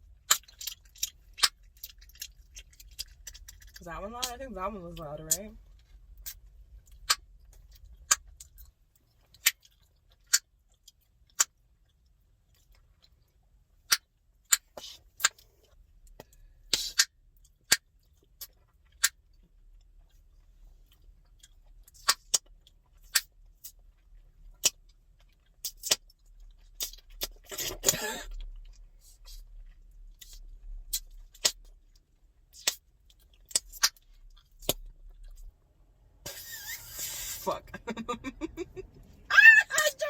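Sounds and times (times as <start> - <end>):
chewing gum snapping pops: 25.6 - 26.2, 33.4 - 34.0.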